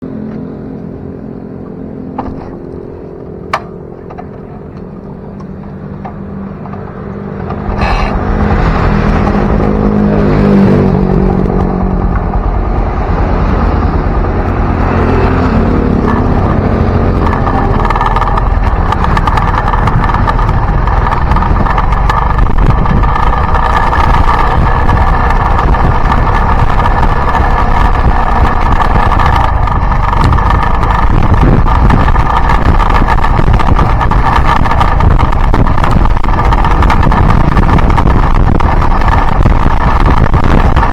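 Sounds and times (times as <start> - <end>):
motorcycle engine: 0.0 - 40.9
wind rumble on microphone: 0.0 - 40.9.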